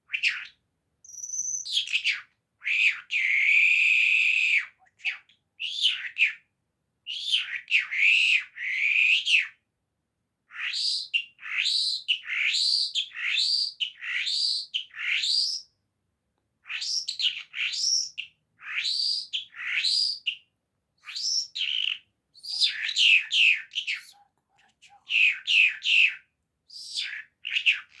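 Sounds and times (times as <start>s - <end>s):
small songbird chirping: 0.2s - 2.3s, 10.6s - 15.8s, 16.6s - 28.0s.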